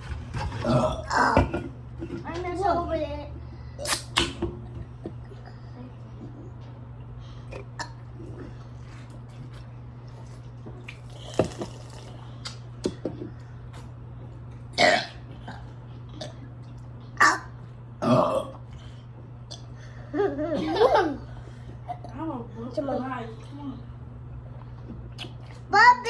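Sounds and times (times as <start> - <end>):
people burping: 0.6 - 1.7, 7.4 - 8.6, 14.8 - 16.5, 17.2 - 18.9.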